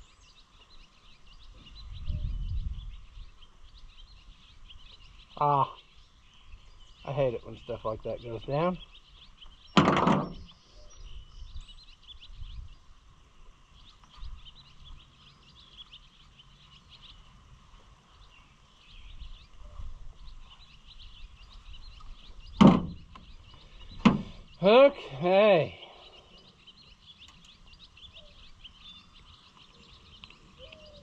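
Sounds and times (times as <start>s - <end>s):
birds chirping faintly: 0.0s - 31.0s
sharp knock: 9.8s - 10.5s, 22.6s - 23.0s.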